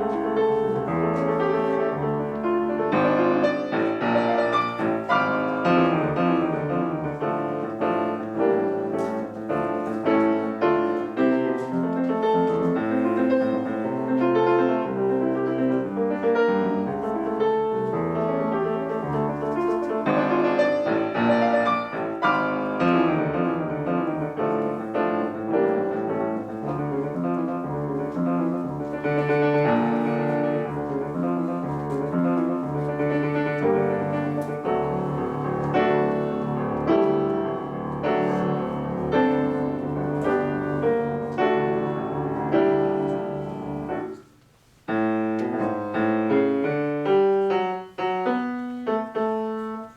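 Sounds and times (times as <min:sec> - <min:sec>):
solo piano classical piece: 0:00.0 - 0:49.9.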